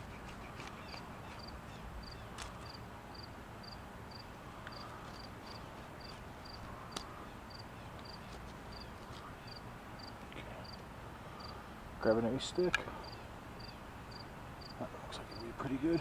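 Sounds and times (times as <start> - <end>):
cricket chirping: 0.9 - 10.8, 13.0 - 15.5.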